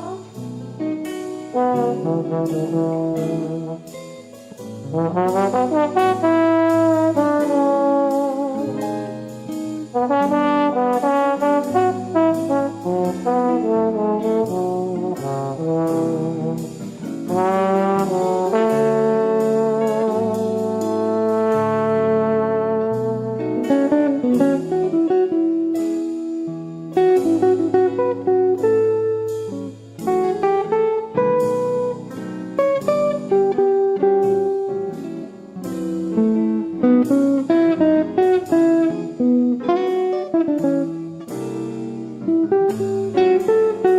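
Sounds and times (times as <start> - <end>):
jazzy brass music: 0.0 - 43.9.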